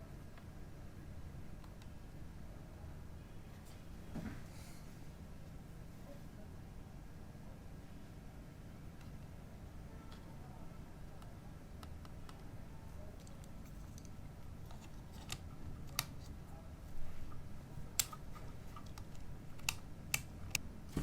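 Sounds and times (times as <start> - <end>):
low room hum: 0.0 - 21.0
light clicks and taps: 17.3 - 20.6.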